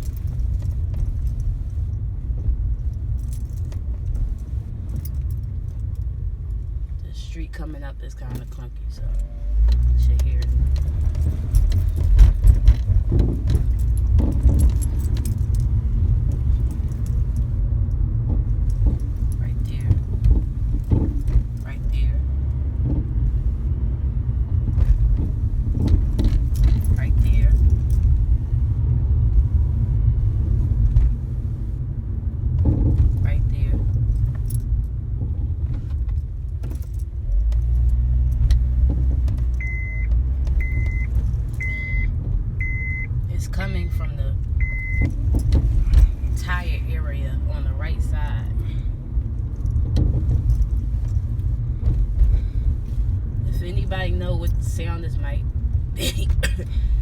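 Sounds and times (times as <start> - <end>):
road rumble inside car: 0.0 - 57.0
suspension clicking and rattling: 0.0 - 57.0
high electronic beep: 39.6 - 43.1, 44.6 - 45.1.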